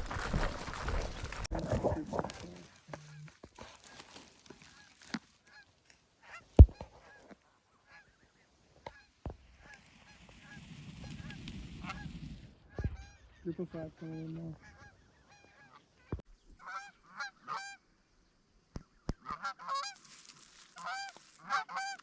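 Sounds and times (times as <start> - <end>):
rustling: 0.0 - 7.4, 19.8 - 22.0
geese honking: 1.6 - 10.6, 11.2 - 17.8, 19.2 - 22.0.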